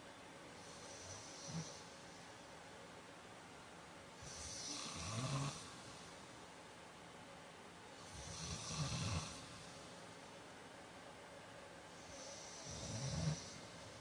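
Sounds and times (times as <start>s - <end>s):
man snoring: 0.9s - 1.8s, 4.3s - 5.8s, 8.0s - 9.5s, 12.1s - 13.7s.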